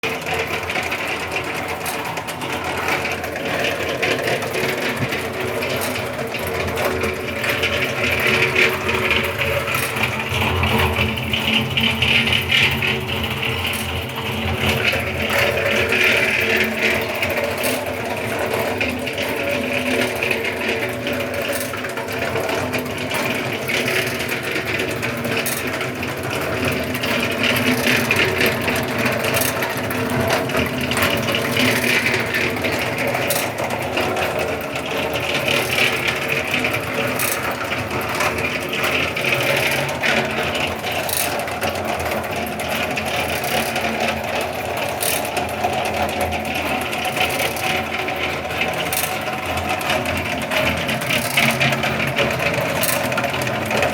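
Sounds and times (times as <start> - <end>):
concrete mixer whirring: 0.0 - 53.9.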